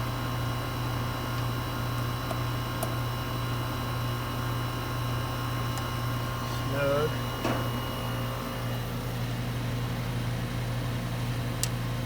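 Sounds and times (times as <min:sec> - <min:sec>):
air conditioner unit humming: 0:00.0 - 0:12.0.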